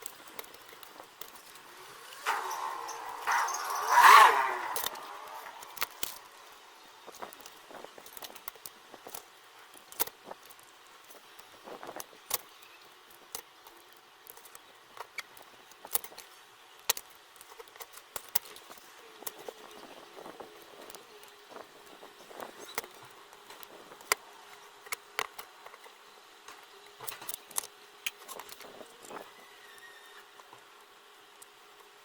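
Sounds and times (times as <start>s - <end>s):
small metal tools clicking: 0.0s - 19.8s.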